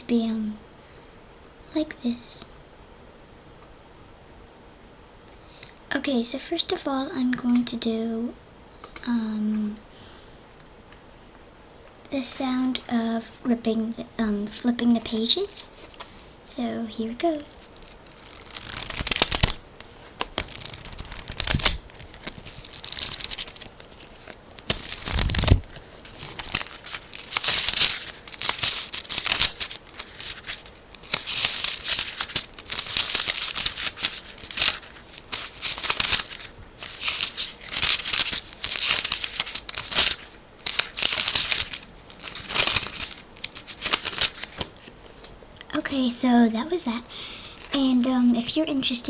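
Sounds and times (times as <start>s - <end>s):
thin pages flipping: 17.8s - 45.0s.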